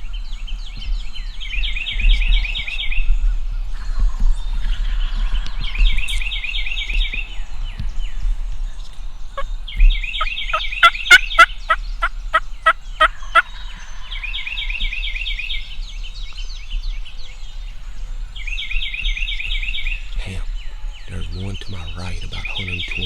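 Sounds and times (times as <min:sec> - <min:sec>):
small bird chirping trill: 0:08.7 - 0:23.0
turkey calling: 0:09.4 - 0:14.7, 0:20.1 - 0:23.0.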